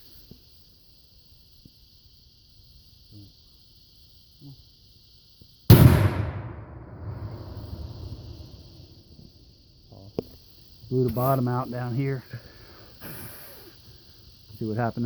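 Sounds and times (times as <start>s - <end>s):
high insect chorus: 0.0s - 15.0s
firecracker bang: 5.7s - 8.7s
rumbling decay: 5.7s - 8.8s.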